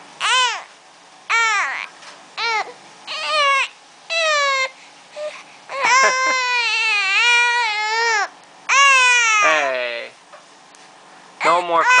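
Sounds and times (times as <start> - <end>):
baby crying: 0.2 - 0.7, 1.3 - 9.8, 11.4 - 12.0.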